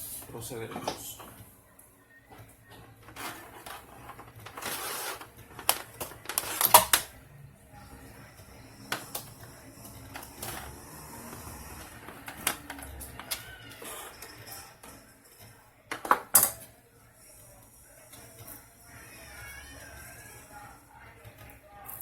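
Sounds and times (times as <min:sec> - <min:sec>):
scraping rustle: 0:03.1 - 0:05.4.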